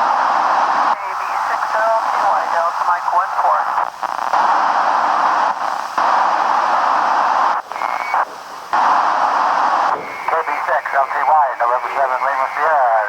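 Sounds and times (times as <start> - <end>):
radio receiver hiss: 0.0 - 13.0.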